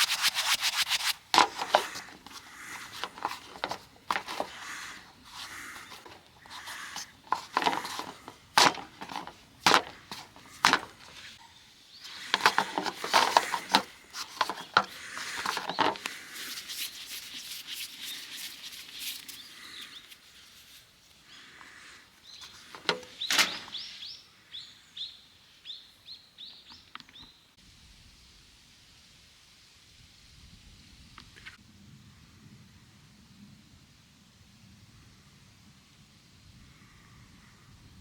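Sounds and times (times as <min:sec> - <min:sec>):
knocks and clatter of handling: 0:01.3 - 0:04.6, 0:05.4 - 0:11.3, 0:12.2 - 0:16.6, 0:22.7 - 0:23.7
bird chirping: 0:09.9 - 0:27.6.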